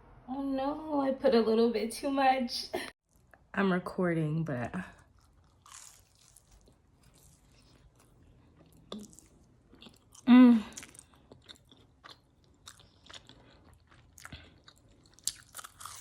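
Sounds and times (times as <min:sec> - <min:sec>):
person chewing food: 0:05.0 - 0:16.0
person humming: 0:10.3 - 0:10.8.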